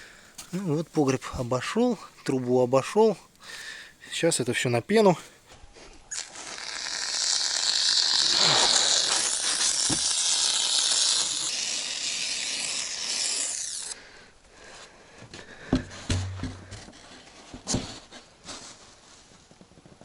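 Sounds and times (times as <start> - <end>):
foam spray can hissing: 6.1 - 14.0.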